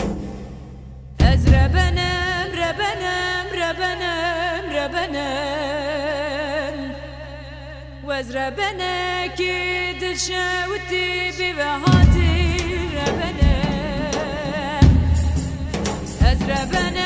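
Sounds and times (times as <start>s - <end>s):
woman singing folk song: 1.2s - 7.3s, 8.0s - 17.0s
steady low drone: 10.0s - 15.8s.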